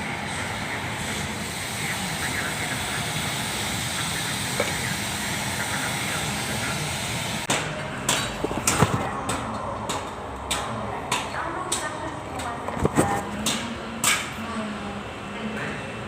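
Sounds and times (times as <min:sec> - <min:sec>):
engine running: 0:00.0 - 0:15.5.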